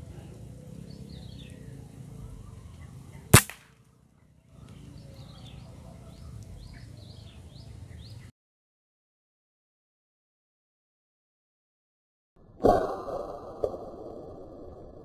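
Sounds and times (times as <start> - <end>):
small birds chirping: 0.0 - 3.4, 4.2 - 8.3
air rifle shot: 3.3 - 3.7.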